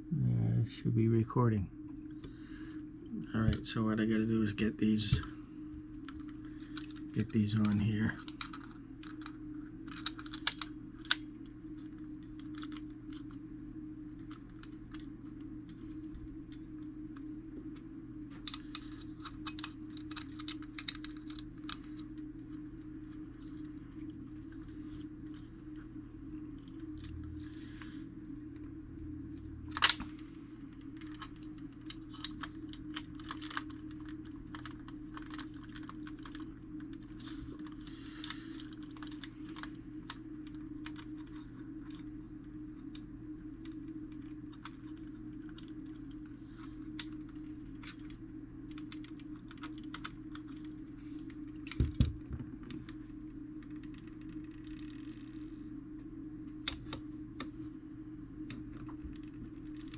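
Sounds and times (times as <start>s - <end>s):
steady low hum: 0.0s - 59.9s
small metal parts clicking: 6.0s - 13.4s, 18.4s - 22.6s, 30.9s - 42.0s.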